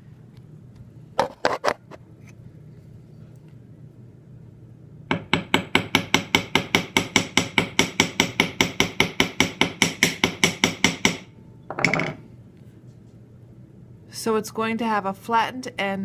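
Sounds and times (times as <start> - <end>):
hammer tapping wire on metal: 5.1 - 11.3.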